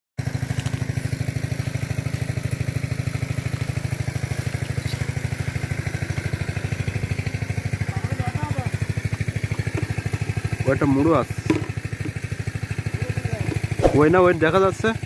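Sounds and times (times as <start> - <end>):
small engine chugging: 0.2 - 15.0.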